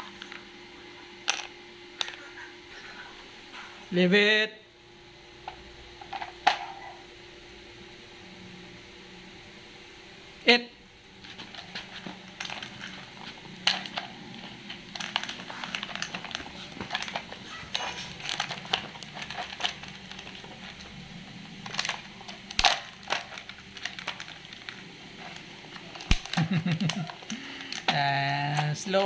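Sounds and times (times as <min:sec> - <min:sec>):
puppy crunching kibble: 0:11.1 - 0:29.0.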